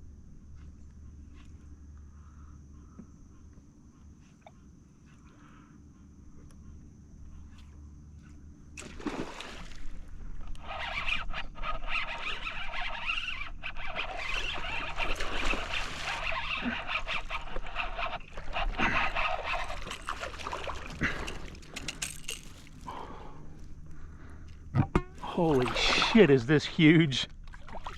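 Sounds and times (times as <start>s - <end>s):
fish splashing in water: 8.8s - 10.1s, 14.1s - 23.0s, 25.2s - 26.4s, 27.4s - 27.9s.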